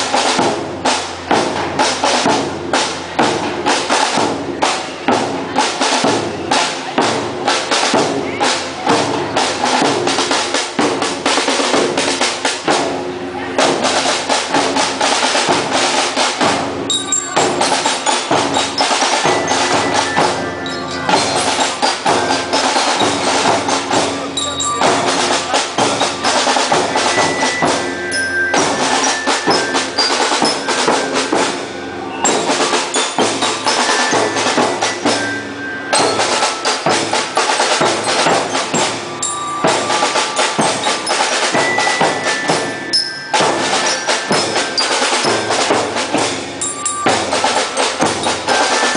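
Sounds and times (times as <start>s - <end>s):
marching band playing: 0.0s - 48.9s
ringing mallet bells: 13.6s - 48.9s.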